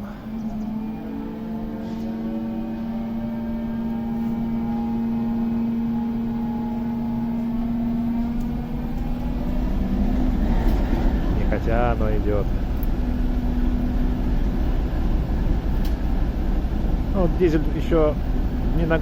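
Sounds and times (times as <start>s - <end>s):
diesel locomotive machinery running: 0.0s - 19.0s.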